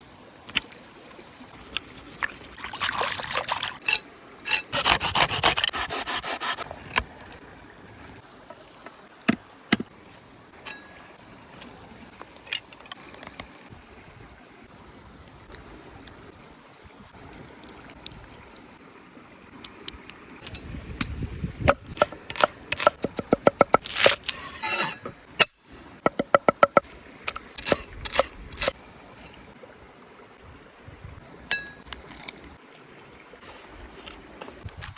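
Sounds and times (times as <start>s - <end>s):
scraping and rubbing: 4.5s - 7.0s, 23.7s - 25.5s
regular taps: 26.1s - 26.8s.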